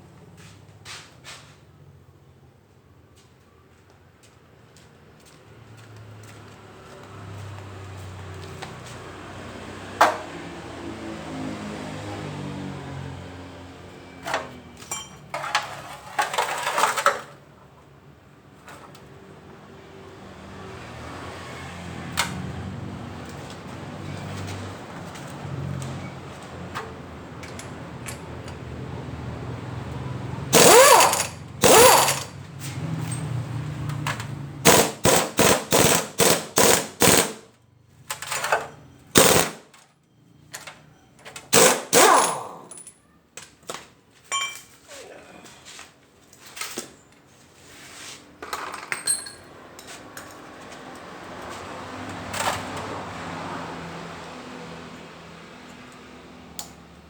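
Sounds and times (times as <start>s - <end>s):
air impact wrench bursts: 30.5s - 32.4s, 34.6s - 37.4s, 39.2s - 39.6s, 41.5s - 42.7s.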